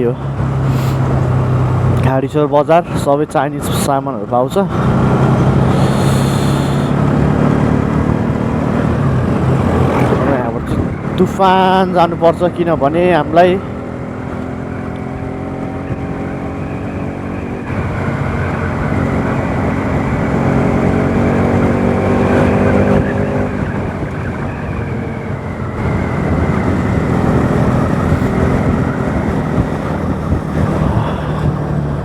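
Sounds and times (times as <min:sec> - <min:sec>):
motorcycle engine revving: 0:04.6 - 0:32.0
wind on microphone: 0:15.6 - 0:32.0.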